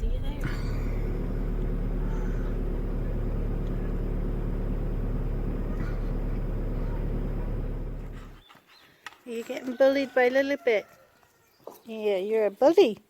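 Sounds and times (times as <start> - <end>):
car engine and road noise: 0.0 - 8.4.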